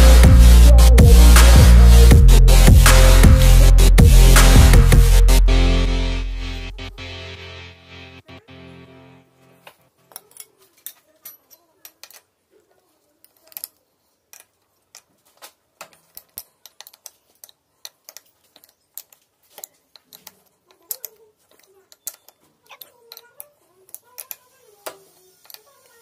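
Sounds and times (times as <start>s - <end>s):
hand tools clicking and knocking: 9.6s - 26.0s.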